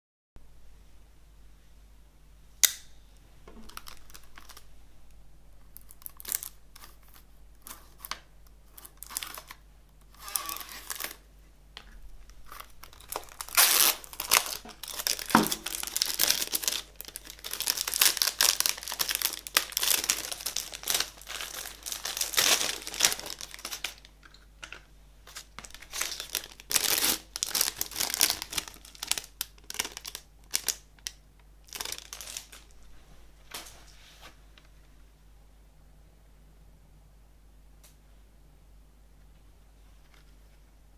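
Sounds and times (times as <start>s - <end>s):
packaging tearing and crinkling: 3.6s - 4.7s, 5.8s - 11.2s, 12.4s - 24.1s, 24.7s - 32.7s.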